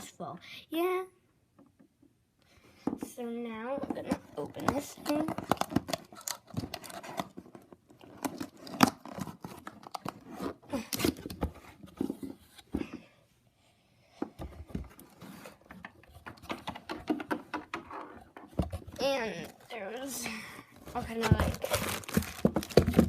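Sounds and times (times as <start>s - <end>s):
packaging rustling and tearing: 4.5s - 11.4s, 20.8s - 23.0s.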